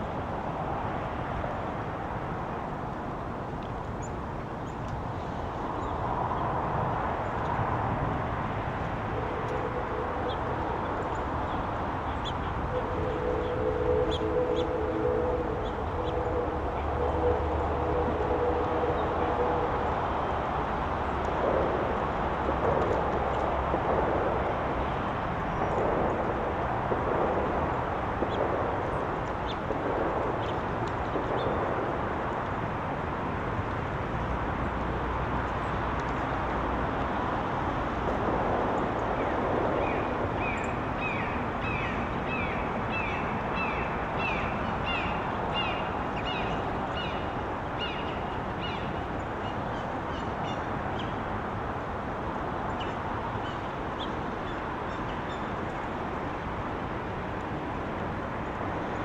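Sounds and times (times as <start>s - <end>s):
background hiss and rumble: 0.0s - 59.0s
songbird call notes: 9.2s - 20.0s, 39.8s - 51.1s.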